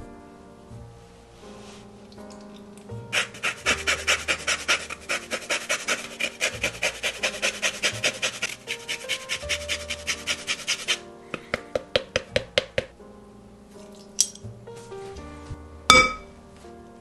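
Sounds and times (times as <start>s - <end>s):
soft background music: 0.0s - 17.0s
kitchen tool rasping: 3.2s - 11.0s.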